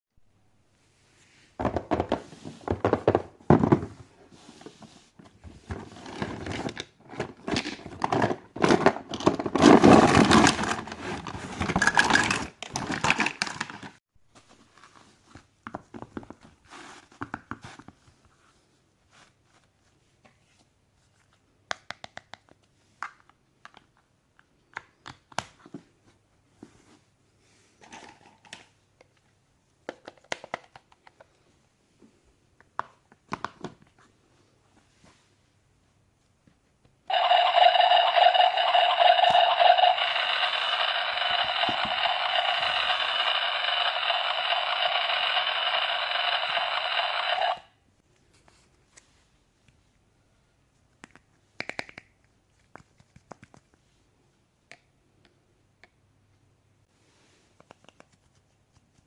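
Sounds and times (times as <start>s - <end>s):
plastic toy pieces clicking: 37.1s - 47.6s.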